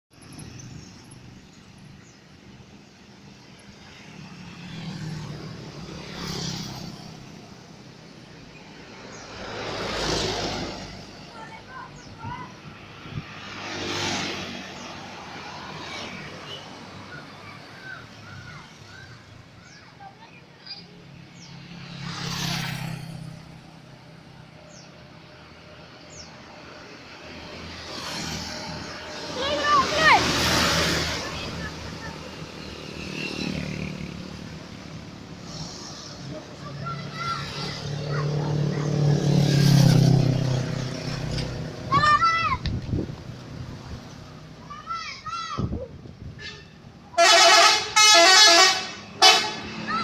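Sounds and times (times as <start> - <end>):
road traffic hum: 0.1 - 50.0
vehicle passing close: 3.8 - 8.0, 8.6 - 16.9, 21.3 - 24.0, 27.0 - 44.6.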